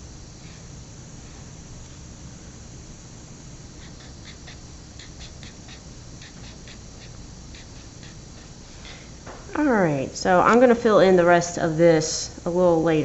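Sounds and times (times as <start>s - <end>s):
faint room hum: 0.0s - 13.0s
drawing strokes on paper: 3.8s - 8.8s.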